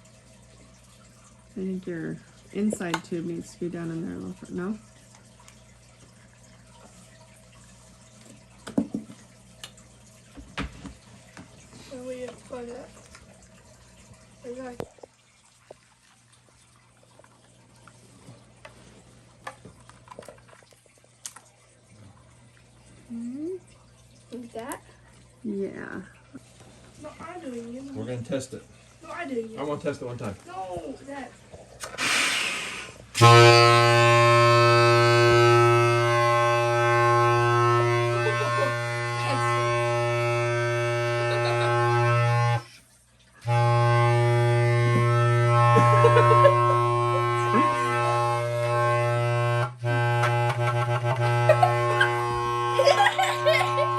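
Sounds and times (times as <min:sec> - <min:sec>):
air horn low note: 0:33.2 - 0:42.7, 0:43.4 - 0:53.9.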